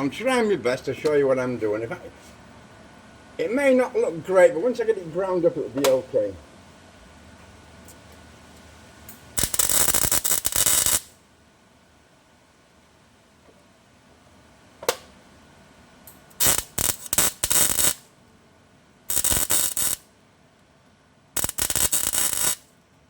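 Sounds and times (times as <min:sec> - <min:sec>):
sharp click: 0:05.8 - 0:06.0
welder crackling: 0:09.1 - 0:11.1, 0:16.3 - 0:18.1, 0:19.1 - 0:20.1, 0:21.4 - 0:22.7.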